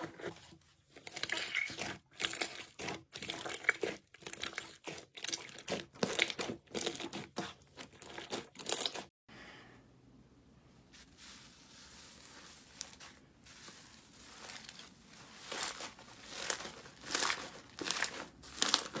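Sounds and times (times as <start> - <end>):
slime crackling by hand: 11.0 - 19.0.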